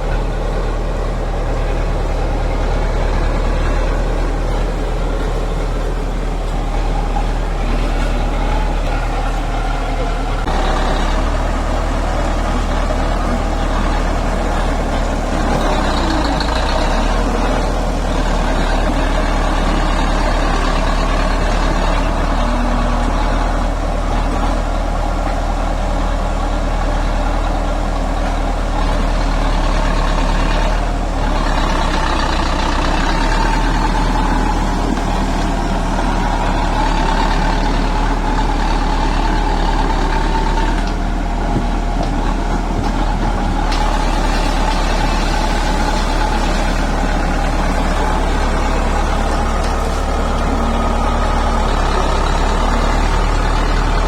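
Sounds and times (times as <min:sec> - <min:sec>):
heavy diesel engine droning: 0:00.0 - 0:54.0.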